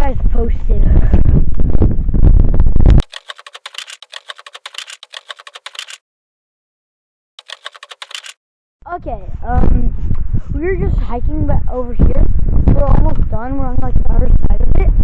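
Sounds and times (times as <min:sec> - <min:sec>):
keyboard typing clicks: 0:03.0 - 0:06.0, 0:07.4 - 0:08.4.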